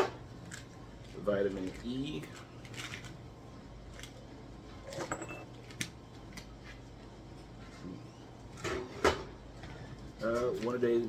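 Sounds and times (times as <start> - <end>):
dishwasher humming: 4.6 - 5.6, 7.6 - 11.0.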